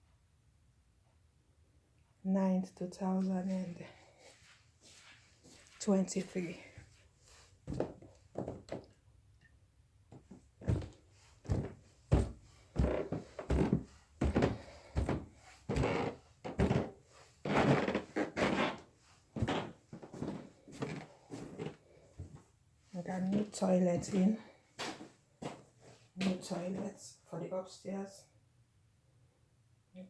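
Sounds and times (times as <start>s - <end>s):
footsteps with dull thuds: 3.3s - 8.9s, 10.1s - 26.5s.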